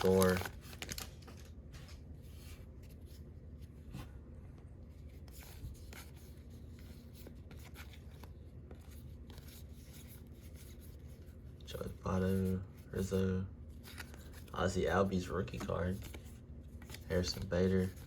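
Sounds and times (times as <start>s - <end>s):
cards rubbing and ticking: 0.0s - 1.4s, 5.1s - 18.0s.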